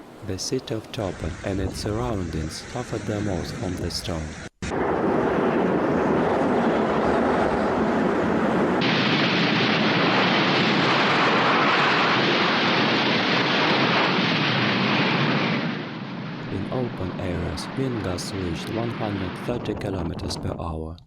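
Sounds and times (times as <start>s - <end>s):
strong wind on microphone: 4.6s - 15.9s.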